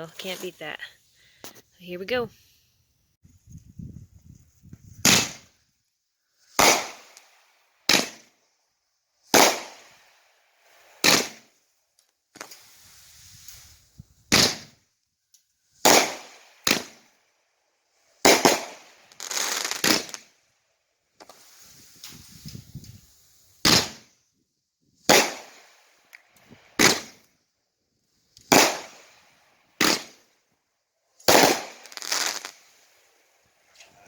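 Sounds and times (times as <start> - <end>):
fireworks sharp reports: 0.0 - 2.3, 18.2 - 20.2, 28.5 - 29.2, 29.8 - 30.2, 31.3 - 32.9
fireworks hissing: 6.3 - 8.4, 9.2 - 14.8, 15.8 - 17.2, 18.0 - 20.4, 21.1 - 24.3, 25.0 - 27.4, 28.1 - 30.3, 31.2 - 34.0.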